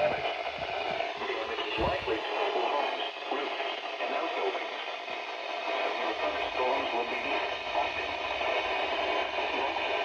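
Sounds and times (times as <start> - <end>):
voice over radio speaker: 0.0 - 4.8, 5.8 - 8.6
radio hiss: 0.0 - 10.0.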